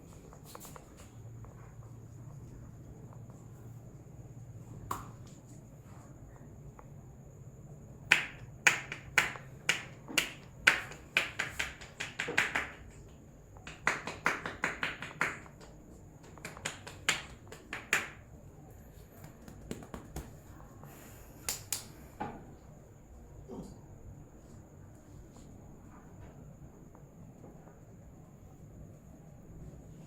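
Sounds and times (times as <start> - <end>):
fingers snapping: 21.5 - 21.9.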